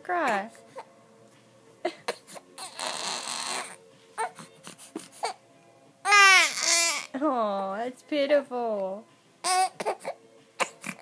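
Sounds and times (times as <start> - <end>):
baby whimpering: 0.4 - 0.9, 1.8 - 5.4, 6.0 - 7.2, 9.4 - 11.0
baby crying loudly: 2.6 - 4.4, 6.0 - 7.1, 9.4 - 11.0.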